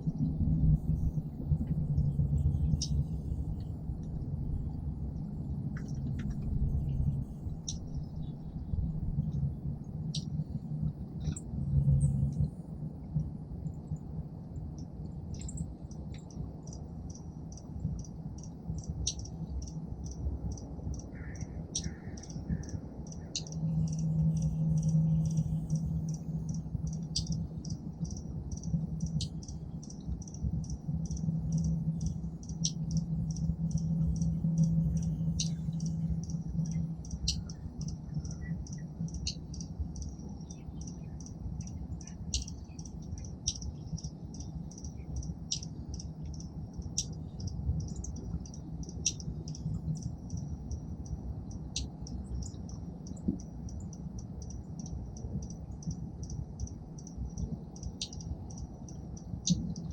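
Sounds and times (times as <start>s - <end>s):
low background hum: 0.0s - 59.9s
songbirds chipping: 15.3s - 59.9s.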